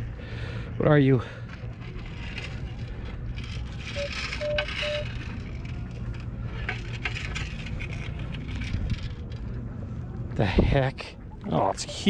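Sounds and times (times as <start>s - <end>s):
low rumble: 0.0s - 12.0s
digging clicks and scrapes: 1.4s - 9.6s
metal detector beeps: 4.0s - 5.2s.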